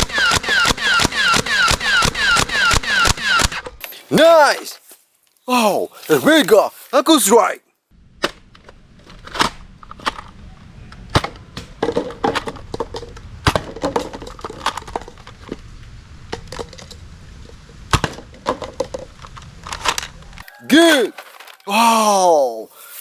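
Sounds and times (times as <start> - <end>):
plastic toy clicks and knocks: 11.1 - 15.6.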